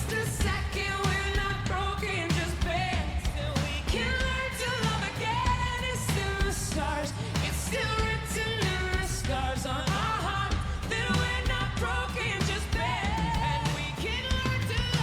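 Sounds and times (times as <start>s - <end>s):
pop song with singing: 0.0s - 15.0s.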